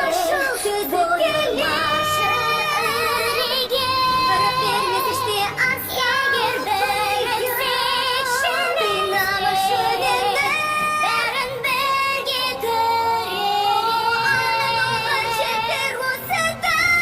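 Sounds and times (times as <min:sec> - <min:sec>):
two women singing a duet: 0:00.0 - 0:17.0.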